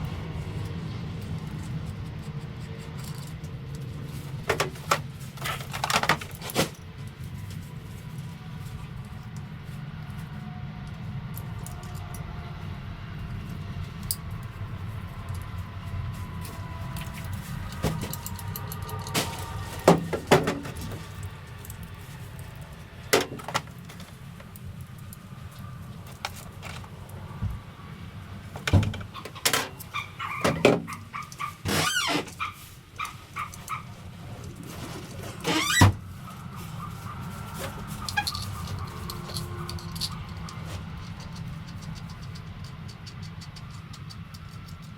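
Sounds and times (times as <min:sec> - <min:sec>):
steady low hum: 0:00.0 - 0:31.7
tools clicking and clanking: 0:01.2 - 0:06.9, 0:16.9 - 0:22.0, 0:23.1 - 0:27.2, 0:28.6 - 0:32.4, 0:37.6 - 0:44.9.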